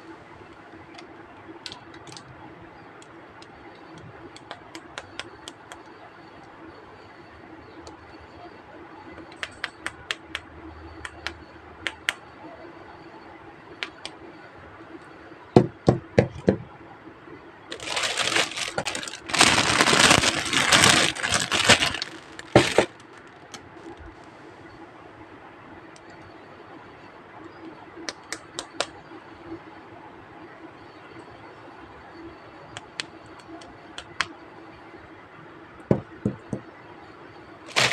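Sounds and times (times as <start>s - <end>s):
plastic packaging crinkling: 17.7s - 23.6s, 37.7s - 37.9s.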